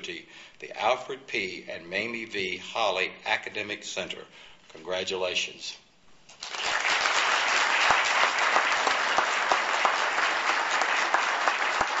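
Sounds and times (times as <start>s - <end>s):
audience applauding: 6.4s - 12.0s.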